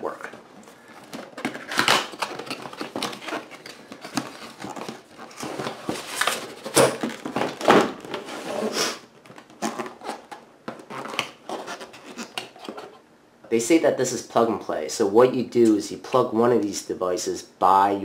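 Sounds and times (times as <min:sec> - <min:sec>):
cardboard and plastic rustling: 0:00.0 - 0:13.0.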